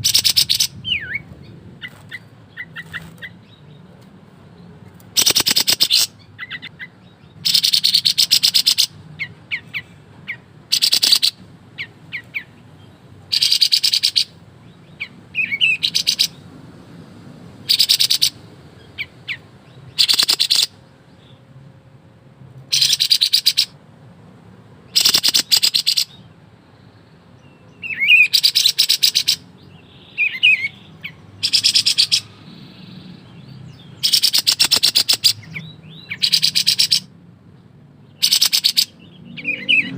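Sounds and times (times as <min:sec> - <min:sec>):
songbird rattling trills: 0:05.0 - 0:06.7, 0:07.4 - 0:09.0, 0:10.7 - 0:11.9, 0:13.3 - 0:14.3, 0:15.4 - 0:16.4, 0:17.6 - 0:18.4, 0:19.0 - 0:20.8, 0:22.7 - 0:23.7, 0:24.9 - 0:26.3, 0:27.9 - 0:37.1, 0:38.2 - 0:39.0
short high bird chirps: 0:05.2 - 0:06.7, 0:24.9 - 0:26.2.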